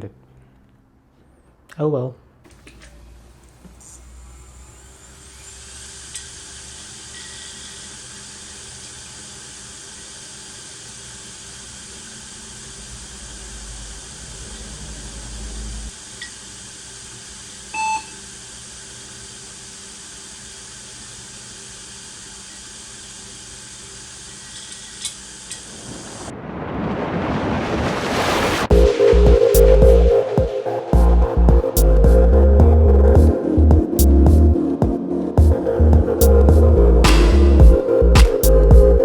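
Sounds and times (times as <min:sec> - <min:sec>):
short electronic beep: 0:17.8 - 0:18.2
low hum: 0:25.7 - 0:39.0.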